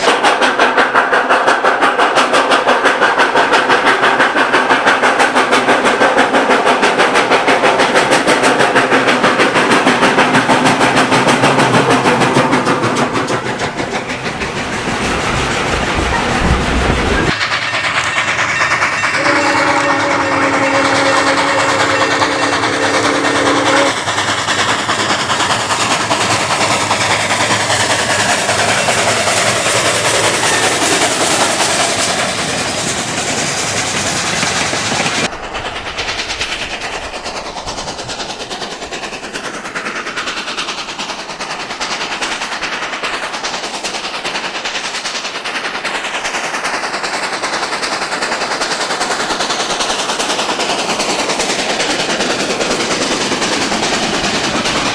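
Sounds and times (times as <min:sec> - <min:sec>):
train running on rails: 0:00.0 - 0:54.9
train horn: 0:19.1 - 0:24.0.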